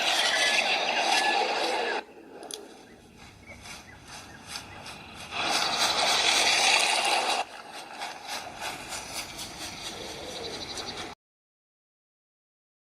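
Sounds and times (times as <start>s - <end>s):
fluttering hiss: 3.1s - 11.2s
rushing noise through phone speaker: 3.1s - 11.2s.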